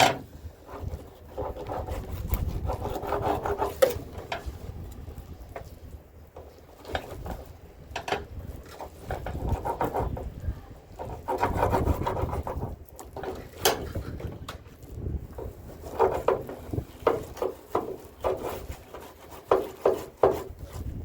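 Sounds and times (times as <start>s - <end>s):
knife scraping fish: 0.6s - 4.6s, 8.6s - 14.3s, 15.6s - 21.0s.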